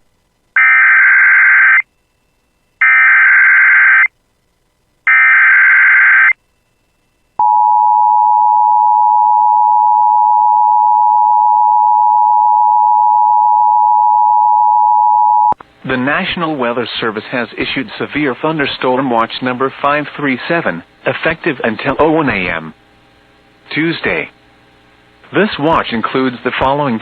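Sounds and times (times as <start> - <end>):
steady attention tone: 5.1 - 15.6.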